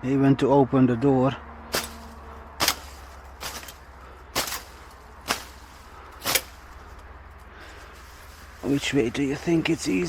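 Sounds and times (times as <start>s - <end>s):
blade strokes cutting brush: 1.7s - 7.1s.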